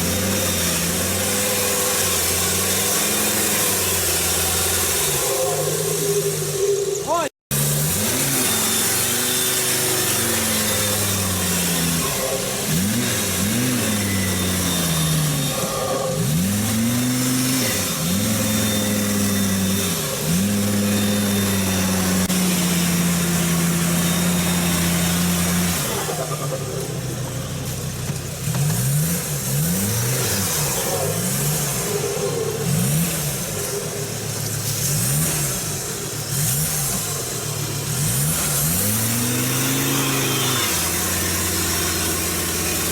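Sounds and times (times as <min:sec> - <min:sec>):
diesel engine revving: 0:00.0 - 0:42.9.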